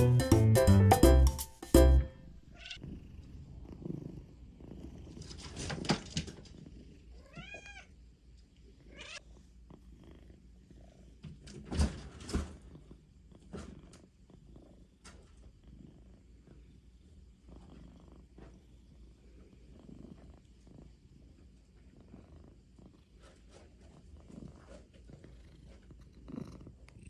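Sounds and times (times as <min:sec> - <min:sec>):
cat purring: 0:02.4 - 0:07.3, 0:08.3 - 0:11.6, 0:12.4 - 0:27.0
cat meow: 0:02.5 - 0:03.0, 0:07.2 - 0:07.9, 0:08.9 - 0:09.2.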